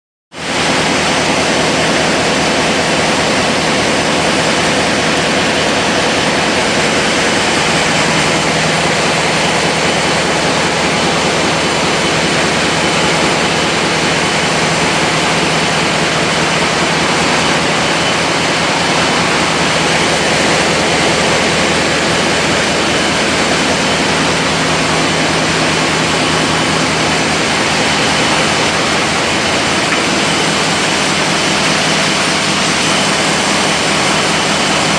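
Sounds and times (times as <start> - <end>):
engine machinery drone: 0.4 - 34.9.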